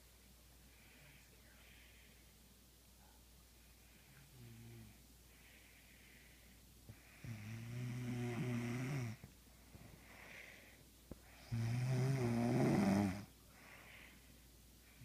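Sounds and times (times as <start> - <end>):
soft breath out: 3.0 - 7.4, 9.5 - 11.4, 13.5 - 15.0
person snoring: 7.2 - 9.2, 11.4 - 13.3.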